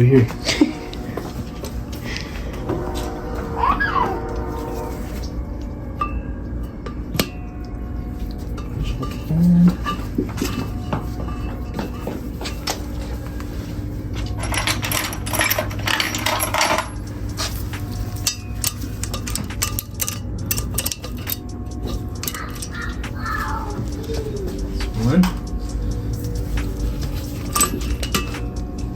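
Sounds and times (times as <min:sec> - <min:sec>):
low buzz: 0:00.0 - 0:07.9
metal tools and parts clinking: 0:14.2 - 0:28.9
sharp clicks: 0:17.0 - 0:28.9.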